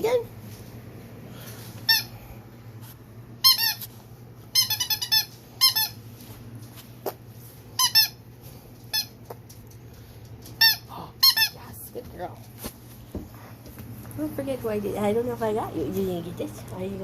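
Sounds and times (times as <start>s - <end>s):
squeaky dog toy: 1.9s - 2.1s, 3.4s - 3.9s, 4.5s - 6.0s, 7.8s - 8.2s.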